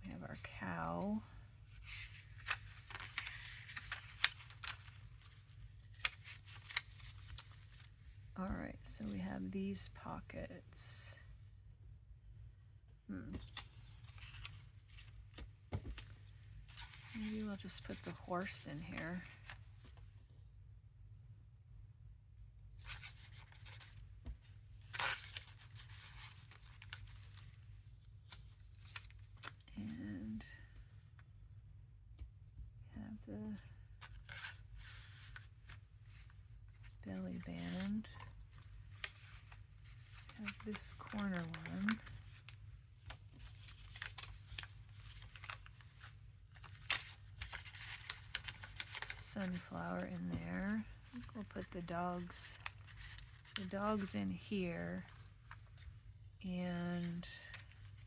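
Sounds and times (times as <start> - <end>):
low steady hum: 0.0 - 58.0
paper rustling and scraping: 1.7 - 8.0, 13.4 - 18.6, 34.0 - 56.0.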